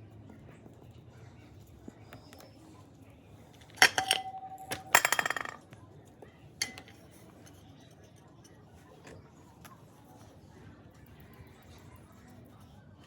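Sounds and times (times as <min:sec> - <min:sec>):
small metal parts clinking: 0:03.6 - 0:05.6, 0:06.6 - 0:07.0
metal piece bouncing on hard surface: 0:03.7 - 0:05.6, 0:06.6 - 0:07.0.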